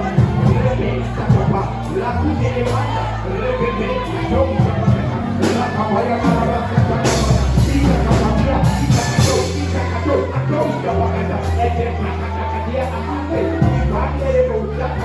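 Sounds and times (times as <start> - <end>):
voices singing: 0.0 - 15.0
worship band playing: 0.0 - 15.0.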